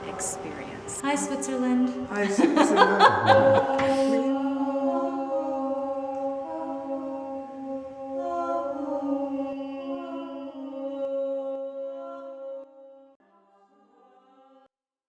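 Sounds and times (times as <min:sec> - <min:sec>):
voices chanting a drone: 0:00.0 - 0:11.6.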